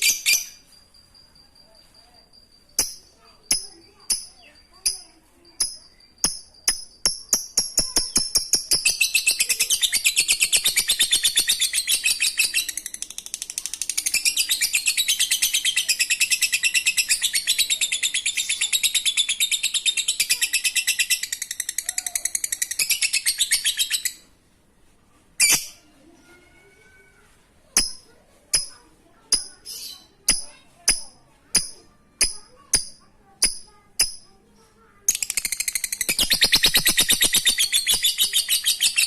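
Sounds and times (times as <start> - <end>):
lovebird chattering trill: 2.8 - 24.2, 35.1 - 39.0
sharp bird calls: 35.2 - 39.0.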